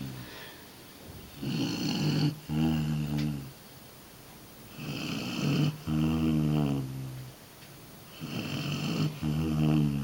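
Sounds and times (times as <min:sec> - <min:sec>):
low buzzing snore: 0:00.0 - 0:00.6, 0:01.4 - 0:03.6, 0:04.7 - 0:07.3, 0:08.1 - 0:10.0.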